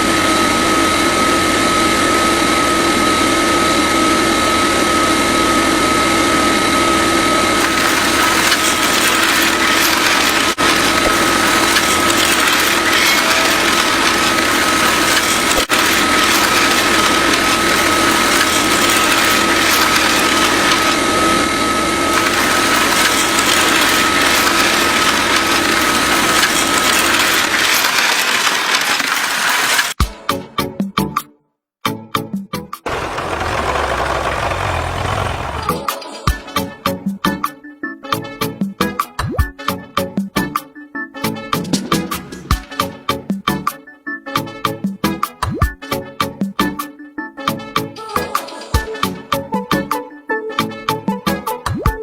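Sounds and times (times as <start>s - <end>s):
small motor whining: 7.6s - 21.4s, 22.1s - 30.0s, 32.9s - 35.8s.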